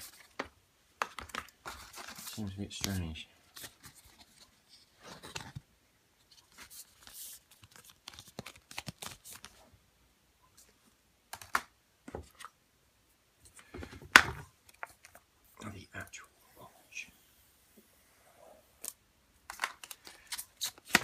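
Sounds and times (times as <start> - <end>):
packaging rustling and scraping: 1.1 - 5.6, 18.8 - 21.0.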